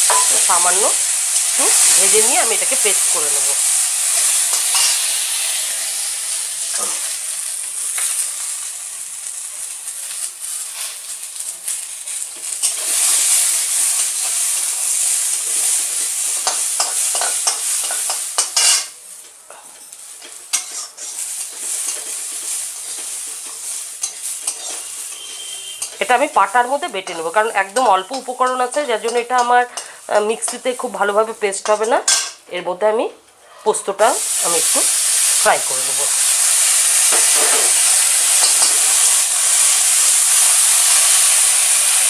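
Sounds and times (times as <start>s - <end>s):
nuts and spices sizzling in oil: 0.0s - 32.4s, 33.7s - 42.0s
spatula scraping a pan: 20.2s - 26.1s, 37.0s - 39.1s.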